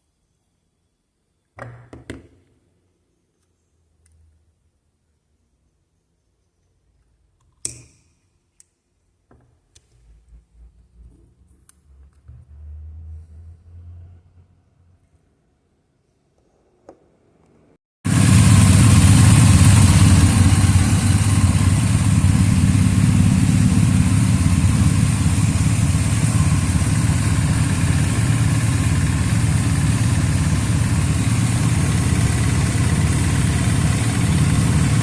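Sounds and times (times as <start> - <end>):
engine running steadily: 18.1 - 35.0.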